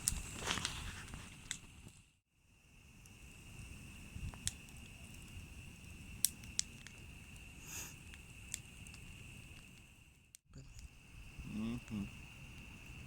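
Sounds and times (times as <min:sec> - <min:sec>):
high-pitched insect drone: 0:10.6 - 0:12.4.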